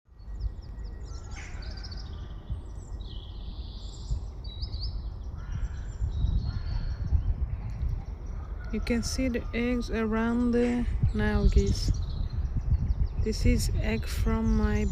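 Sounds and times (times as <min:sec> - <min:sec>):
birds chirping: 0:00.1 - 0:14.9
steady low rumble: 0:00.1 - 0:14.9
harsh crow-like calls: 0:01.1 - 0:02.0, 0:05.4 - 0:07.0.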